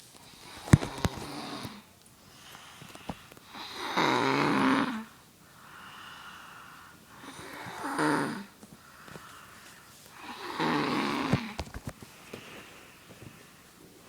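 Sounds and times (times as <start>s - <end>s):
boy snoring loudly: 3.5s - 5.1s, 7.2s - 8.5s, 10.2s - 11.6s
faint breath: 5.4s - 7.8s, 8.7s - 10.6s, 12.0s - 14.0s.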